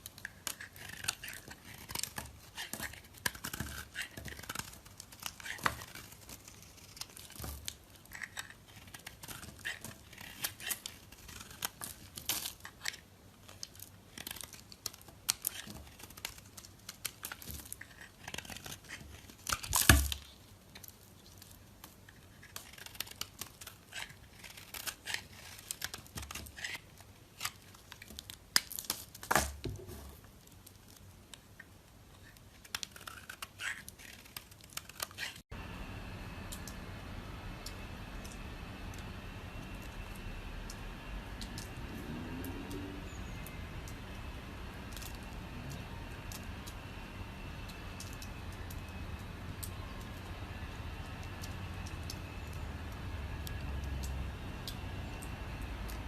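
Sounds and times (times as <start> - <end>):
knife cutting bar soap: 0.0 - 21.1, 21.7 - 30.3, 32.2 - 35.4.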